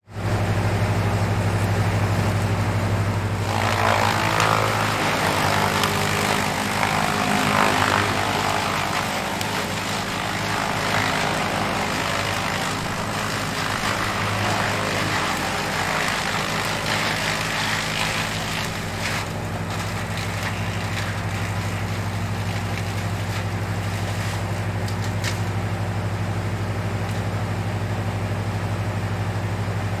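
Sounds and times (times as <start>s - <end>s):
wood chipper engine running: 0.0s - 30.0s
rough chipping noise: 3.2s - 27.5s.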